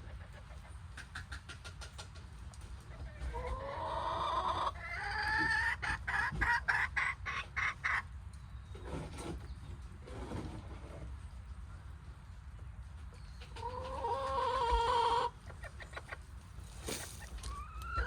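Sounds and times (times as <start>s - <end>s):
hen clucking and squawking: 2.8s - 8.1s, 13.4s - 18.0s.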